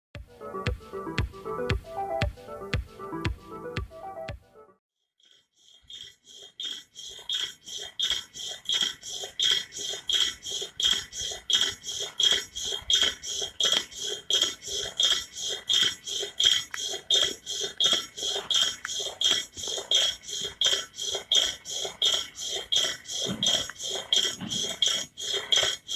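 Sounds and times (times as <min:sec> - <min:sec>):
coil spring squeaking: 0:05.9 - 0:25.9.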